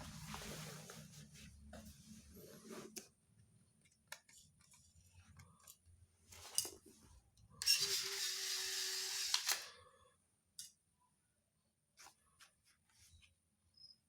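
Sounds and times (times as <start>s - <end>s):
toy robot motor whirring: 7.6s - 9.7s.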